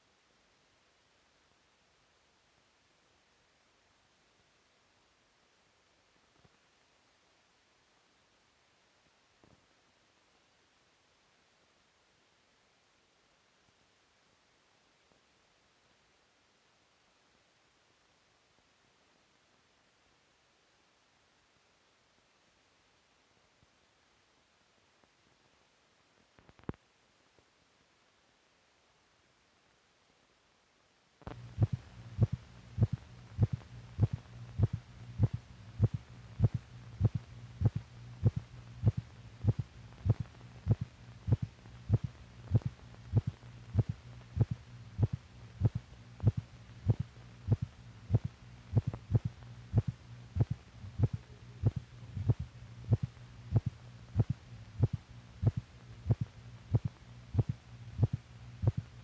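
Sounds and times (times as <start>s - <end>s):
constant low hum: 31.2s - 59.0s
amplified heartbeat: 31.3s - 58.8s.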